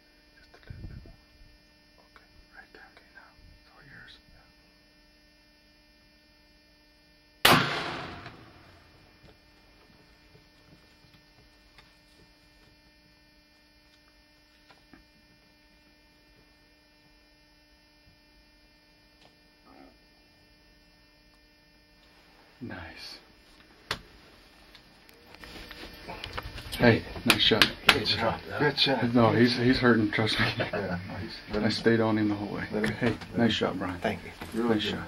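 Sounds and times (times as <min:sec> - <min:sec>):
electrical hum: 0:00.0 - 0:35.0
rifle shot with echo: 0:07.5 - 0:08.9.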